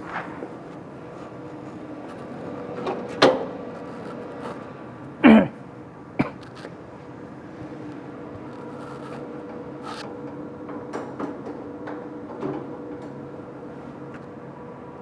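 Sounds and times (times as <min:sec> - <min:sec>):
steady machine hum: 0:00.0 - 0:15.0
printer roller knocks and clicks: 0:01.1 - 0:04.8, 0:10.2 - 0:13.2.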